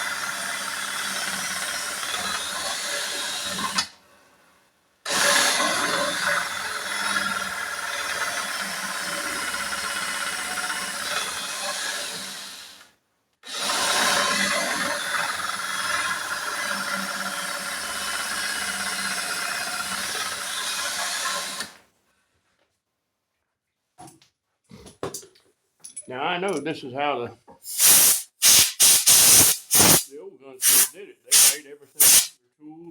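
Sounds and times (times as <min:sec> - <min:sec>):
cordless drill boring: 0:00.0 - 0:03.9, 0:05.1 - 0:21.8, 0:27.7 - 0:32.3.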